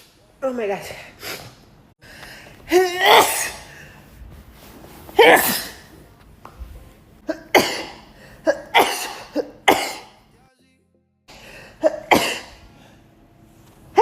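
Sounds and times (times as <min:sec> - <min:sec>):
woman sneezing: 0:02.7 - 0:03.8, 0:05.2 - 0:05.9, 0:07.2 - 0:10.1, 0:11.8 - 0:12.6.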